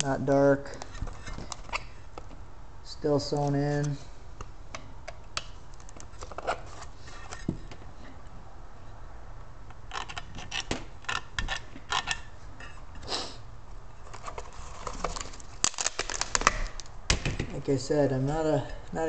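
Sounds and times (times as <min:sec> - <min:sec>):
tools clicking and scraping: 0:09.7 - 0:13.1.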